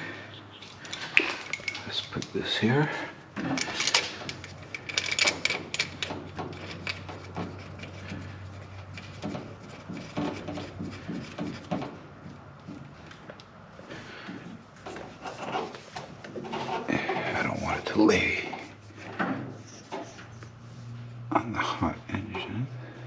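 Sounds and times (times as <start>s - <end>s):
hose fittings clicking and tapping: 0.6s - 2.4s, 3.4s - 8.2s.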